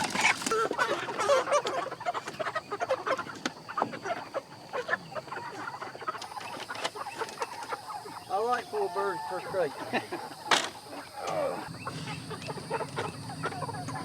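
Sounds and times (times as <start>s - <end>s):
chickens clucking and squawking: 0.0s - 14.0s
knocks of crates: 10.5s - 10.9s.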